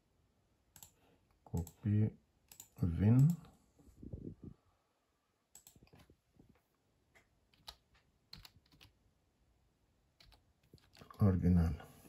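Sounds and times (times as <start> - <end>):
faint keyboard typing: 0.7 - 3.6, 5.5 - 9.0, 10.2 - 11.3.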